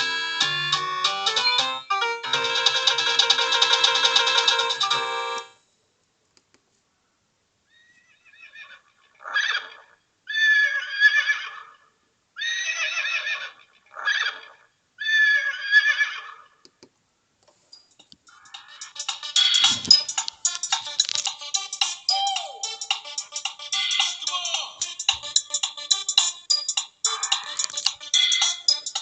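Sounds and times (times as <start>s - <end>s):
musical ringtone: 0.0s - 5.6s, 18.5s - 29.0s
horse whinny ringtone: 18.3s - 20.3s, 22.1s - 22.9s, 26.5s - 29.0s.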